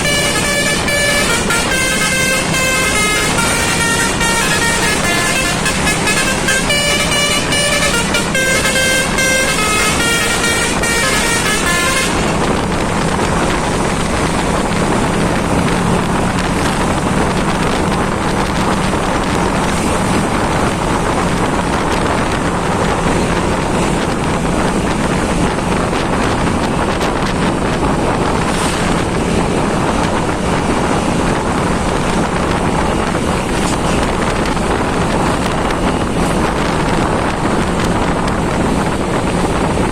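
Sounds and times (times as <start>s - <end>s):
melodic bus horn: 0.0s - 16.0s
road noise rushing: 0.0s - 39.9s.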